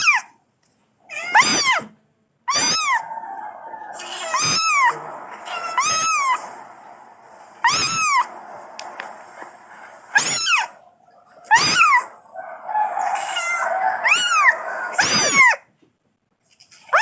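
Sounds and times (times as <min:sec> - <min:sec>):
kitten meowing: 0:01.1 - 0:01.9, 0:02.5 - 0:03.0, 0:04.0 - 0:06.5, 0:07.6 - 0:08.3, 0:10.1 - 0:10.8, 0:11.5 - 0:12.2, 0:13.1 - 0:15.6.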